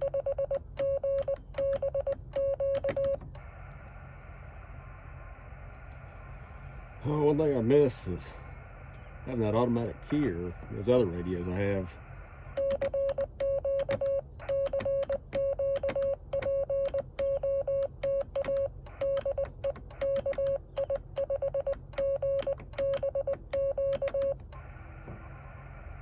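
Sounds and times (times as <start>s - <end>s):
morse code tone: 0.0s - 3.2s, 12.4s - 24.4s.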